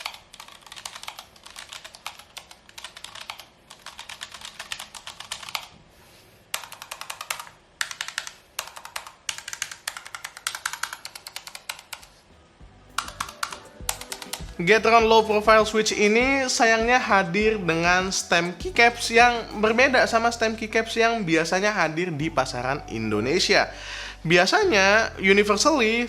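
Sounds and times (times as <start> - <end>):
mechanical keyboard typing: 0.0 - 5.8, 6.5 - 12.2, 12.9 - 15.8.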